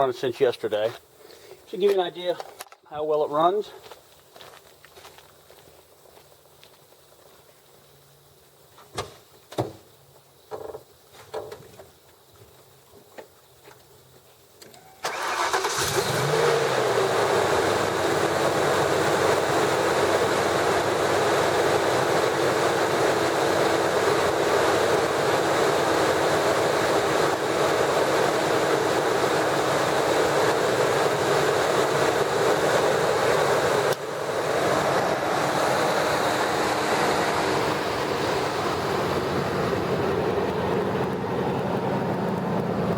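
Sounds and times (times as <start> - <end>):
car engine starting and idling: 14.7 - 42.9.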